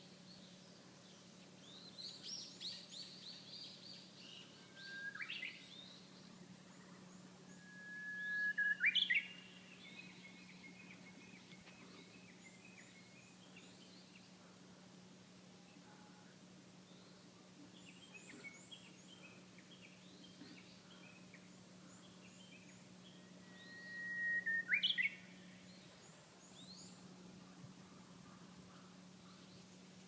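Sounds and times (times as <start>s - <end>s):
soft bird twittering: 0.4s - 14.4s, 16.9s - 29.8s
bird whistling song: 1.6s - 6.1s, 7.5s - 13.8s, 22.3s - 27.0s.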